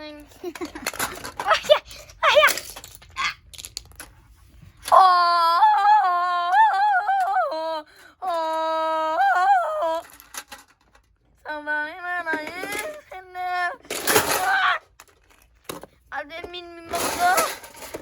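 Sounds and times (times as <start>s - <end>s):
high voice singing wordless tune: 4.9s - 10.1s, 11.4s - 14.8s.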